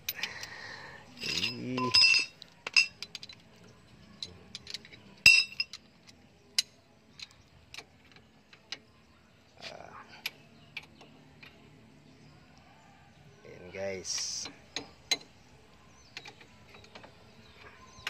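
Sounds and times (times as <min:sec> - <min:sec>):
hand tools clinking on metal: 0:01.2 - 0:03.4, 0:04.1 - 0:07.3.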